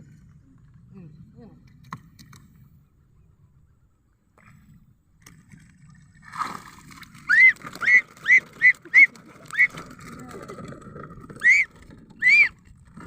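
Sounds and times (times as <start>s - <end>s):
faint low rumble: 0.0s - 6.4s.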